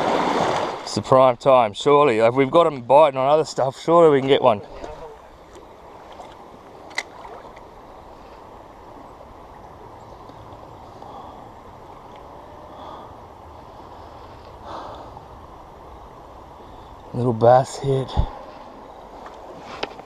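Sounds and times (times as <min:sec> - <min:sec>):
creek water flowing: 0:00.0 - 0:20.0.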